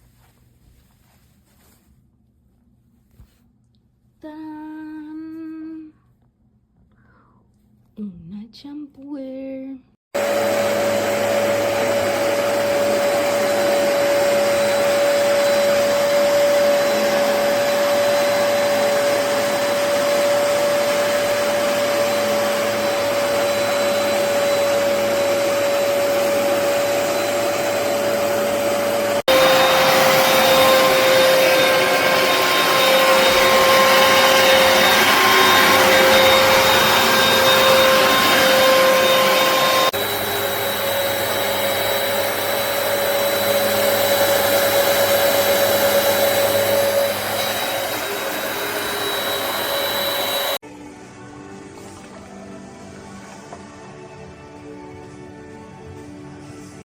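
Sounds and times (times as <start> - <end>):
carpet cleaner motor whine: 10.2 - 50.6.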